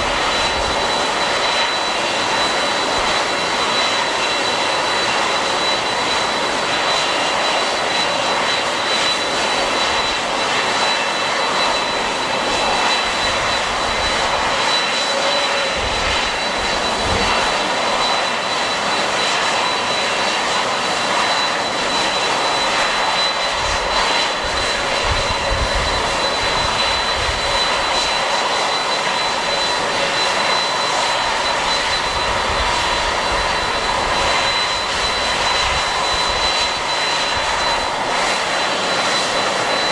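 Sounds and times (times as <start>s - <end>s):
jet engines whining: 0.0s - 39.9s
wind buffeting microphone: 24.4s - 27.7s.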